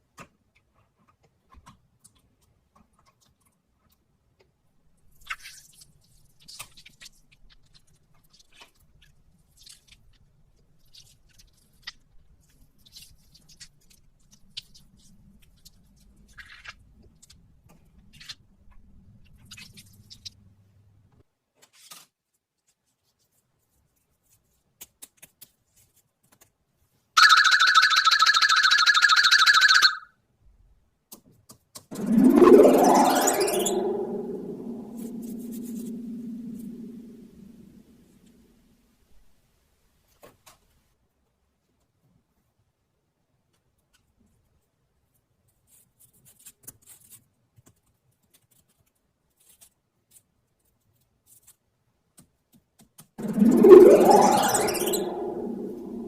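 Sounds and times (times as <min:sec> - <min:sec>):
high-pitched tone: 0:32.0 - 0:37.5, 0:53.2 - 0:56.0.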